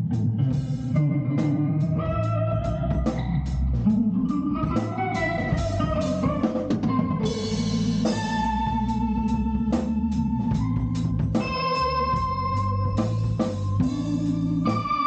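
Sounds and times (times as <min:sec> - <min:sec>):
guitar: 0:00.0 - 0:15.0
held organ notes: 0:00.0 - 0:15.0
steady bass: 0:00.0 - 0:15.0
drum kit hits: 0:04.7 - 0:15.0.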